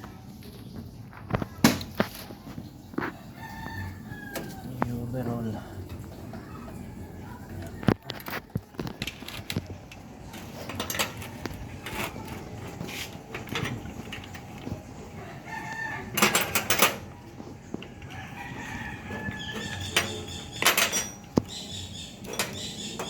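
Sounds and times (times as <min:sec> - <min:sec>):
rooster crowing: 0:03.0 - 0:04.9, 0:15.2 - 0:16.6, 0:17.8 - 0:20.5
metal tools clinking: 0:10.3 - 0:12.5, 0:16.2 - 0:17.1, 0:19.2 - 0:21.6, 0:22.2 - 0:23.0.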